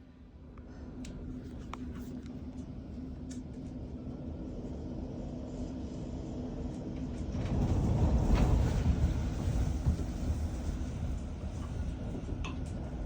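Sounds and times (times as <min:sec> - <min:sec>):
wind gusts buffeting house: 0:03.7 - 0:13.0.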